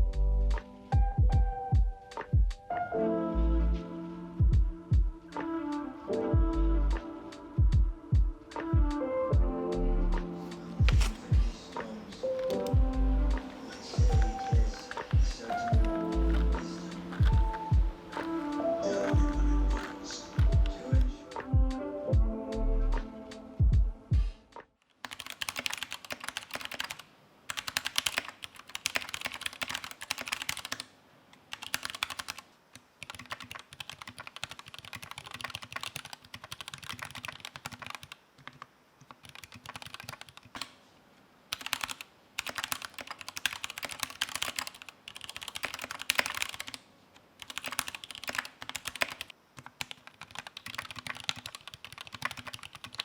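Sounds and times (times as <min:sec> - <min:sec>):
mechanical keyboard typing: 0:10.8 - 0:11.6, 0:12.2 - 0:21.2, 0:25.0 - 0:30.9, 0:31.5 - 0:32.4, 0:33.0 - 0:40.8, 0:41.5 - 0:46.8, 0:47.4 - 0:53.0.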